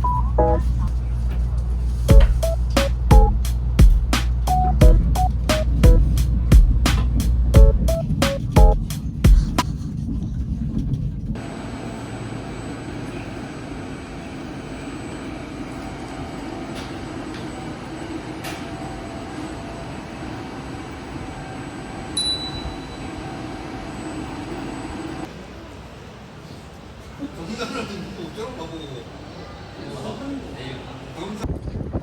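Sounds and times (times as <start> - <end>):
short high beep: 0.0 - 0.8, 22.2 - 23.1
faint steady hum: 0.0 - 3.6
train rumbling: 0.0 - 11.4
loud low-pitched sound: 4.5 - 6.9.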